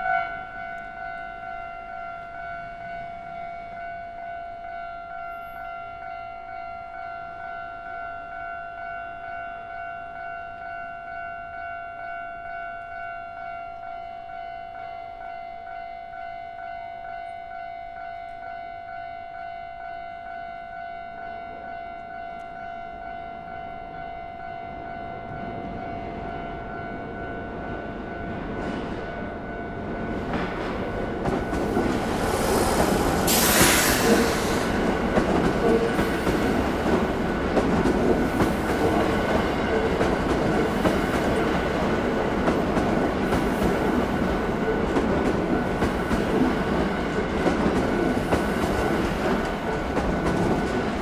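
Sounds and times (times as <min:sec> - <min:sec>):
train rumble: 0:25.3 - 0:51.0.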